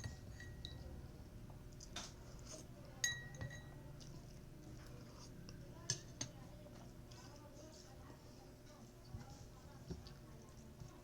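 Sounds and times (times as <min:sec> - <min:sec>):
utensil clinking against a dish: 0:00.0 - 0:00.9, 0:02.0 - 0:04.1, 0:05.7 - 0:07.5.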